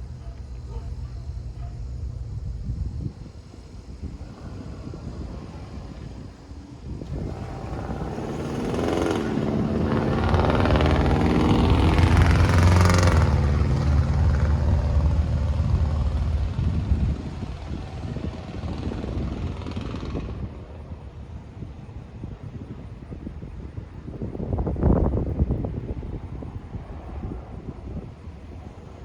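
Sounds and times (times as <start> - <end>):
vehicle passing close by: 3.7 - 20.6.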